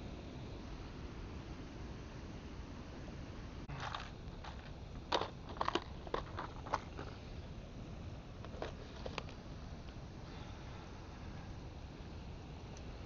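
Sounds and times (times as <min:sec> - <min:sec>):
sharp crunching clicks: 0:03.8 - 0:07.1.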